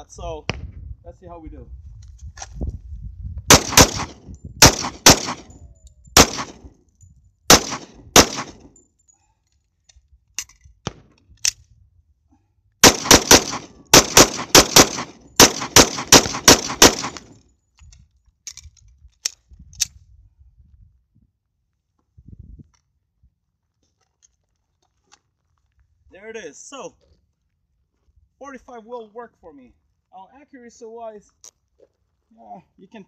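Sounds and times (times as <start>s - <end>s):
pistol shots: 3.5s - 5.5s, 6.2s - 6.7s, 7.5s - 8.7s, 12.8s - 17.4s
faint clinks: 8.8s - 10.6s.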